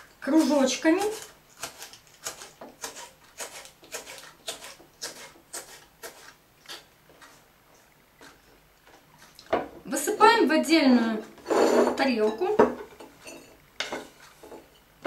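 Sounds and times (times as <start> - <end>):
knife slicing on a board: 0.4 - 7.4.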